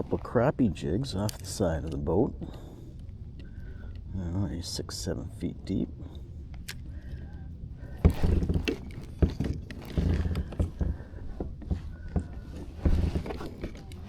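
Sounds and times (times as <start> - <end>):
fishing gear knocks and rattles: 6.5 - 14.0.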